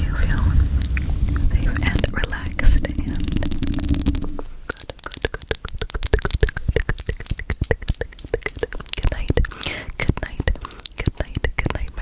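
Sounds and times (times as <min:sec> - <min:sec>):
wet mouth clicks and pops: 0:02.9 - 0:12.0.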